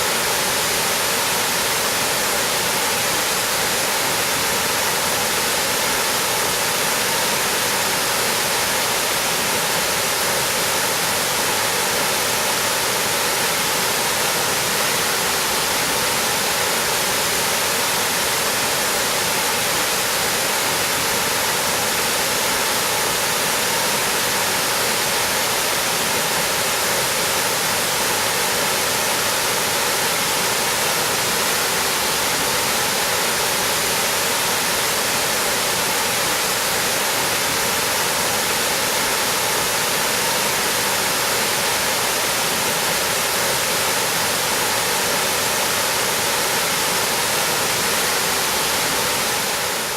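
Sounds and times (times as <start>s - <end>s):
waterfall rushing: 0.0s - 49.9s.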